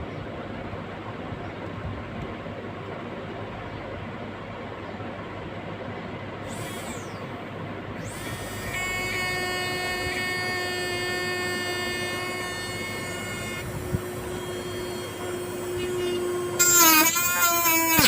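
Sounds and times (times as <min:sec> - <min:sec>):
rotary tool motor whine: 0:06.4 - 0:18.0.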